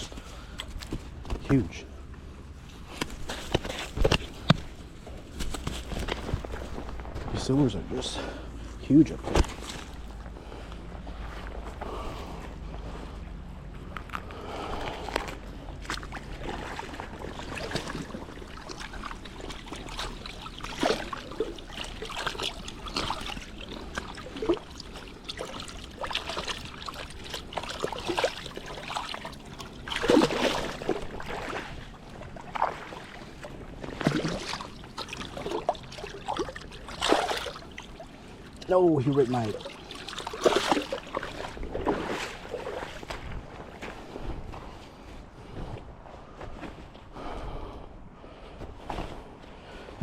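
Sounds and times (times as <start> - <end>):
creek water splashing: 9.1 - 13.0, 14.6 - 43.5.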